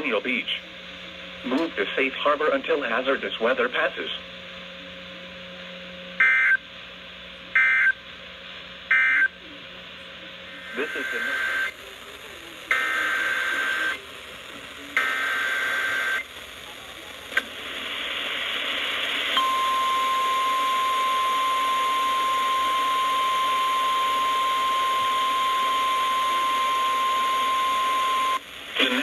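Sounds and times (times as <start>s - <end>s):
static hiss: 10.3s - 29.0s
steady alarm tone: 19.4s - 28.4s.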